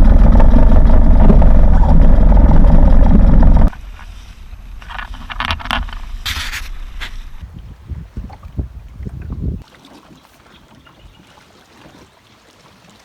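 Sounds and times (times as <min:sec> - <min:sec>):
boat motor running: 0:00.0 - 0:07.4
wind buffeting microphone: 0:00.0 - 0:09.7
short hiss: 0:05.9 - 0:07.4.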